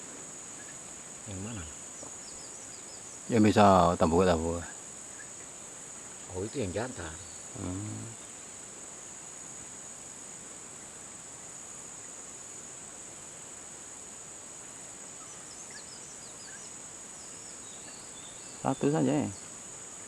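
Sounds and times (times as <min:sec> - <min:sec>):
insects droning: 0:00.0 - 0:20.0
faint high chirps: 0:14.7 - 0:19.5.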